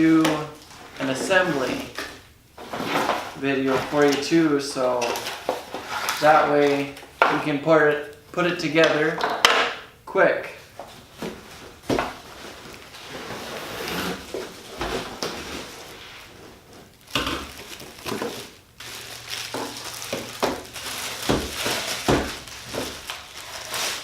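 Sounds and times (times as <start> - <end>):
packaging rustling and crinkling: 0.1 - 7.2, 10.7 - 24.0
plastic parts clattering: 0.1 - 7.5, 16.6 - 24.0.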